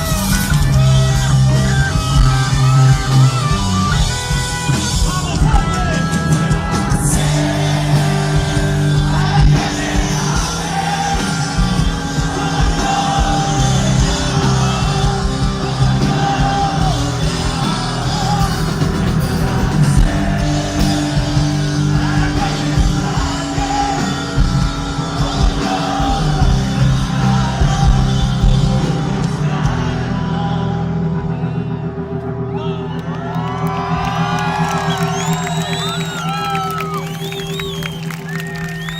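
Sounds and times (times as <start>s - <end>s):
rock band playing live: 0.0s - 38.9s
lead vocalist singing loudly: 5.2s - 32.6s.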